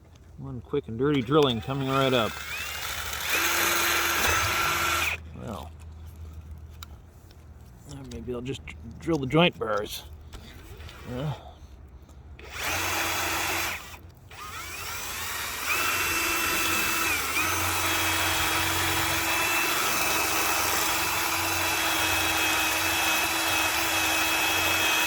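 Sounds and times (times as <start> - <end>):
power drill whining under load: 1.2 - 5.2, 12.4 - 25.0.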